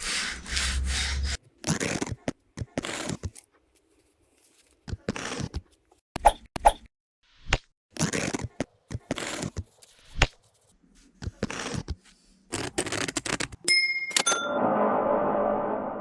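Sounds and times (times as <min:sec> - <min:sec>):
hand tool scraping strokes: 0:00.0 - 0:02.1
ringing metallic clink: 0:13.7 - 0:14.6.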